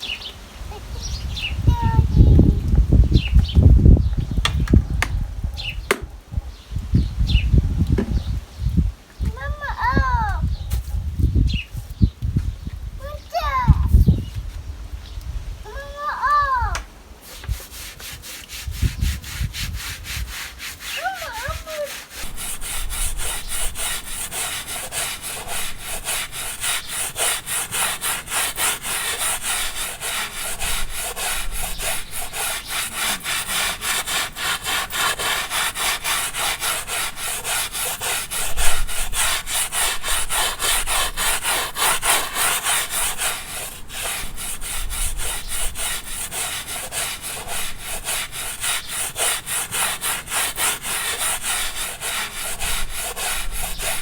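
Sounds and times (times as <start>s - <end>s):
stiff brush scrubbing carpet: 17.2s - 54.0s.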